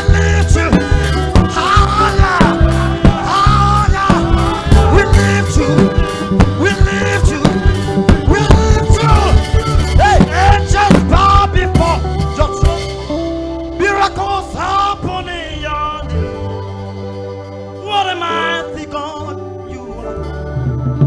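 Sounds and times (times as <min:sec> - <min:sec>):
drum beat: 0:00.0 - 0:13.0
person singing: 0:00.0 - 0:13.1, 0:13.8 - 0:16.5, 0:17.8 - 0:21.0
bass line: 0:00.0 - 0:21.0.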